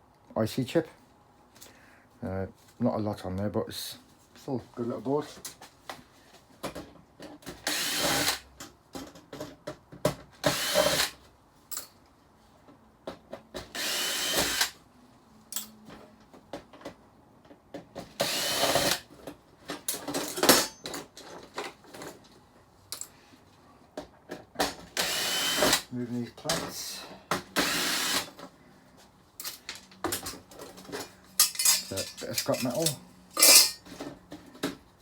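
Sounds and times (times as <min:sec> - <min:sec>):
power screwdriver whining: 0:25.0 - 0:25.9, 0:27.6 - 0:28.3
screws and metal parts clattering: 0:29.4 - 0:33.9.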